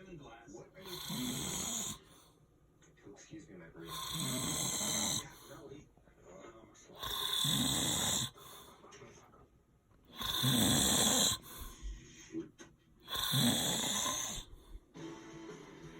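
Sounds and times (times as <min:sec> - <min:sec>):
quiet breathing: 0:00.0 - 0:15.8
man snoring loudly: 0:00.8 - 0:02.1, 0:03.8 - 0:05.4, 0:07.0 - 0:08.6, 0:10.1 - 0:11.8, 0:13.1 - 0:14.8.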